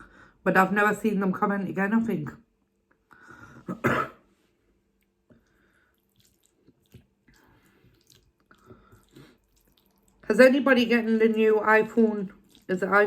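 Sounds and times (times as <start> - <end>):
quiet chewing with clicks and smacks: 4.8 - 10.3, 12.3 - 12.8
loud wet slurp: 5.8 - 10.3, 12.2 - 13.0.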